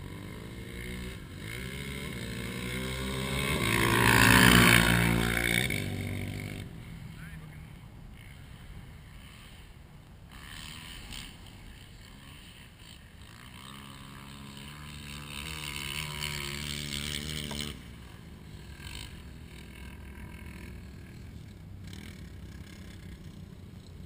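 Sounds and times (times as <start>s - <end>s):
atv engine revving: 0.0s - 24.0s.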